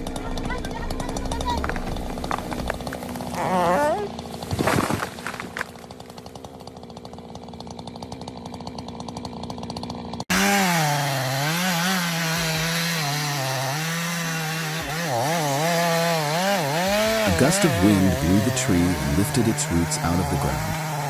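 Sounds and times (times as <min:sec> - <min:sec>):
engine pulsing: 0:00.0 - 0:10.2
chainsaw running: 0:00.0 - 0:21.0.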